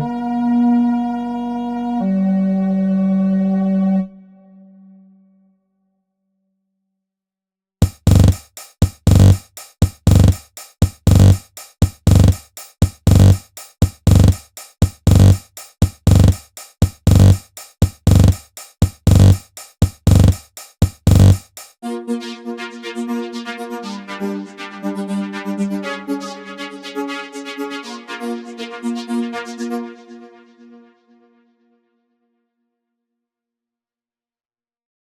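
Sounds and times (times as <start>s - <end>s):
drum machine beat with deep kick: 7.8s - 21.8s
sustained synthesizer chords: 21.8s - 30.6s.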